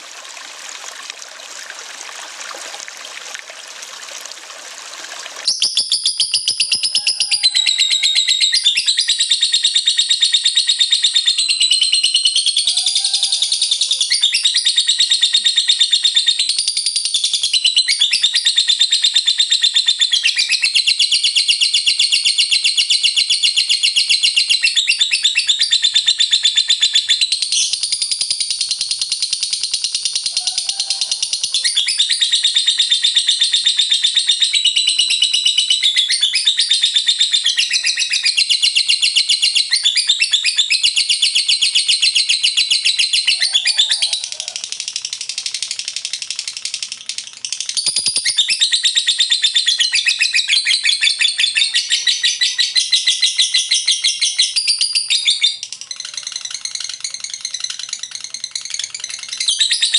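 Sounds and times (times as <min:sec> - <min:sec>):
running water: 0:00.0 - 0:05.5
lovebird high-pitched trill: 0:05.5 - 0:44.7, 0:45.3 - 0:59.9.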